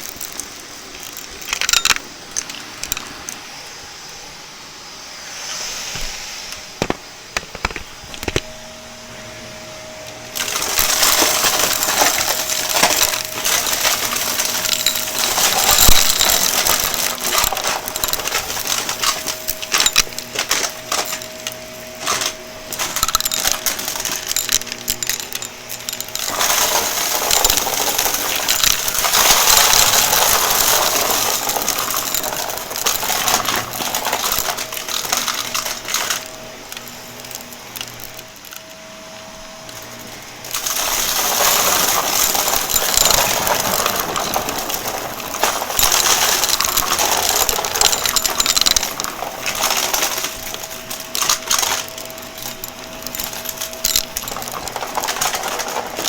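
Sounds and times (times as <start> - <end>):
scattered clicks: 0.0 - 3.4, 10.1 - 38.8
vacuum motor tone: 2.2 - 56.0
debris crackling through vacuum: 10.3 - 38.6, 39.6 - 56.0.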